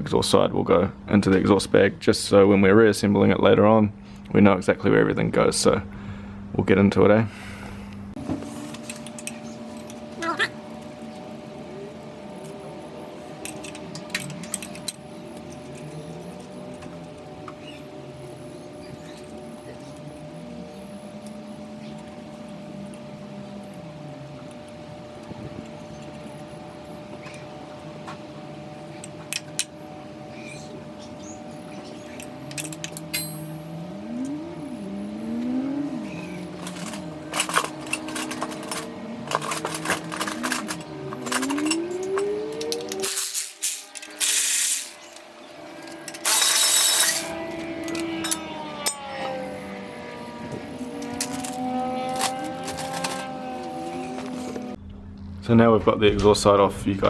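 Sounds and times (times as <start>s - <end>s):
steady low hum: 0.0s - 57.0s
metal tool clinks and clicks: 8.7s - 12.6s, 13.3s - 17.8s, 28.9s - 29.7s, 31.8s - 33.6s, 36.5s - 49.1s, 50.9s - 53.7s.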